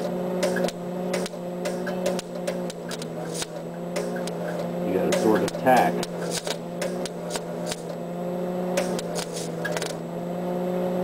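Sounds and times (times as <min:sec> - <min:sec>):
welder humming: 0:00.0 - 0:11.0
welding arc crackling: 0:00.4 - 0:08.0.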